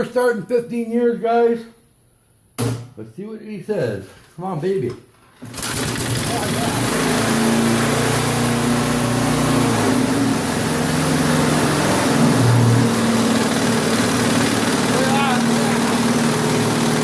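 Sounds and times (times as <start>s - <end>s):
lawnmower engine running: 5.4s - 17.0s.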